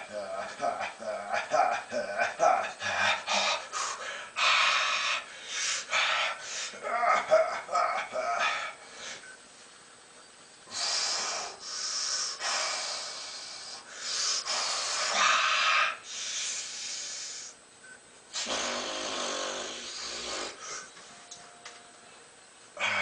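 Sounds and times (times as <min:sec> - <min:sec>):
man groaning: 0:00.0 - 0:03.6, 0:06.8 - 0:08.8, 0:22.8 - 0:23.0
man breathing heavily: 0:00.0 - 0:09.3, 0:10.7 - 0:17.6, 0:18.3 - 0:21.0.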